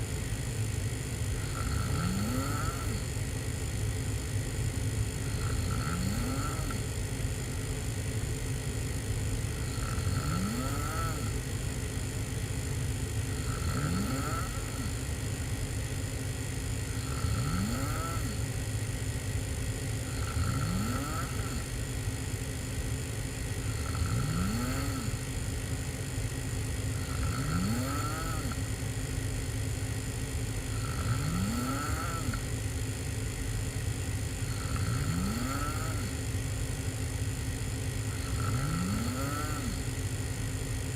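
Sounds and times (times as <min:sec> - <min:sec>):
person snoring: 0:01.3 - 0:03.6, 0:05.1 - 0:07.6, 0:09.5 - 0:11.7, 0:13.2 - 0:15.9, 0:16.7 - 0:18.6, 0:19.8 - 0:22.0, 0:23.3 - 0:25.6, 0:26.9 - 0:28.8, 0:30.6 - 0:32.5, 0:34.3 - 0:36.3, 0:38.0 - 0:40.0.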